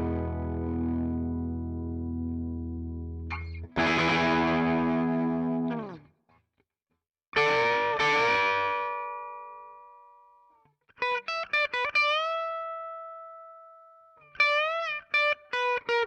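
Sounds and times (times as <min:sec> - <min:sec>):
distorted electric guitar chords: 0:00.0 - 0:06.0, 0:07.4 - 0:09.8.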